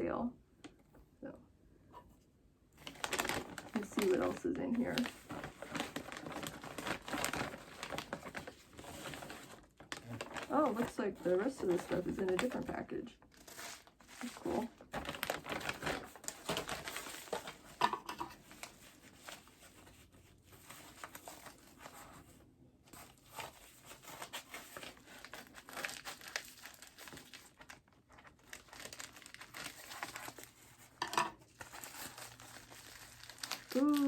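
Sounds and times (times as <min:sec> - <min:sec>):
packaging tearing: 0:02.8 - 0:12.6, 0:13.3 - 0:17.8, 0:23.2 - 0:34.0
packaging crinkling and rustling: 0:02.8 - 0:34.0.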